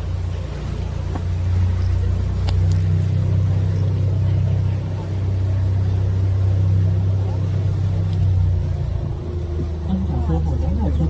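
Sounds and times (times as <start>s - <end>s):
boat motor humming: 0.0s - 11.0s
faint clicks: 2.4s - 2.9s, 8.0s - 8.3s.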